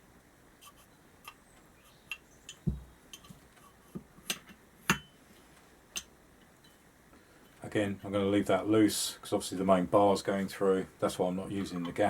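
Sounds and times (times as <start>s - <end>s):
dull knock: 2.6s - 2.9s.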